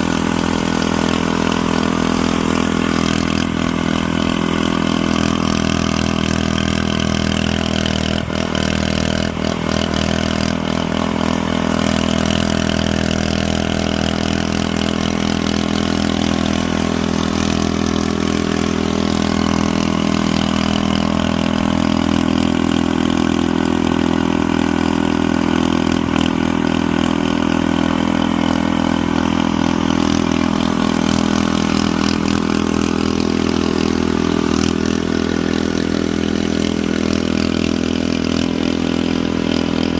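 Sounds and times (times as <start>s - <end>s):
engine humming steadily: 0.0s - 39.9s.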